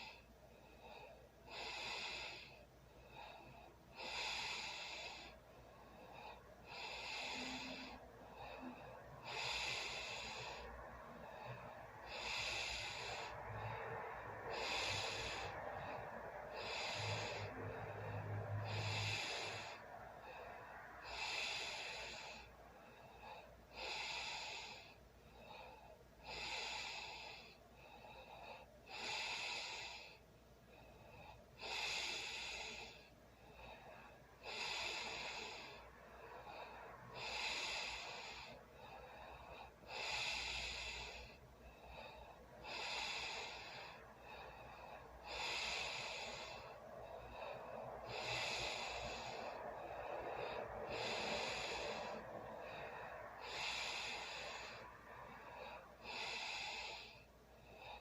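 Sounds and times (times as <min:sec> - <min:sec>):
hissy breath: 0:00.0 - 0:58.0
person snoring: 0:04.0 - 0:05.4, 0:06.1 - 0:22.5, 0:31.6 - 0:41.4, 0:42.2 - 0:57.2.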